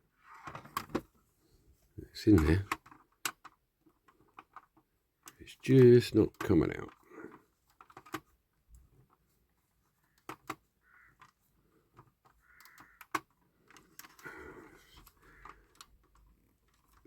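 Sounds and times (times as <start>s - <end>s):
sharp clicks and light taps: 10.1s - 10.6s.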